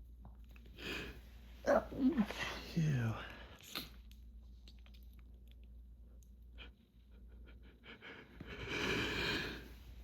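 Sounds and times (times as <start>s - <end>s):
person breathing heavily through nose: 8.4s - 9.9s.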